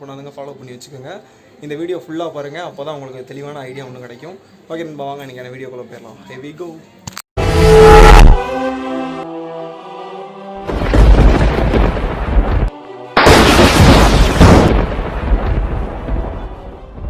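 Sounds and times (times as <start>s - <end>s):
held synth chord: 7.4s - 10.6s
booming rumbling sound effects: 10.6s - 17.0s.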